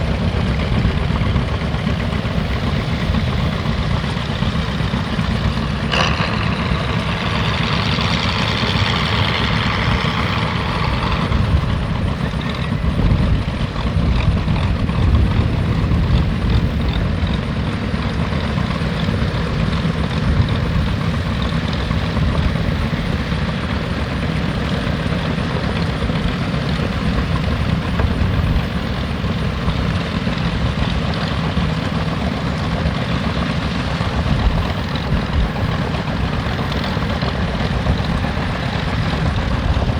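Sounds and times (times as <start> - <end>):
heavy engine rumbling: 0.0 - 39.9.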